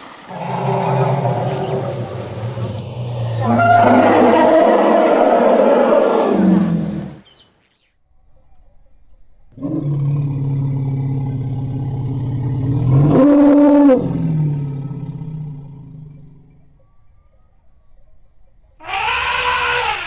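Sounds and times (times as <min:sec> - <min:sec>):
elephant calls: 0:00.1 - 0:07.4, 0:18.8 - 0:20.0.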